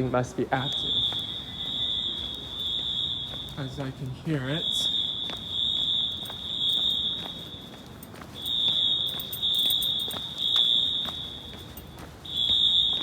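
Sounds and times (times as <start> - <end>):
high-pitched fire alarm horn: 0.5 - 13.0.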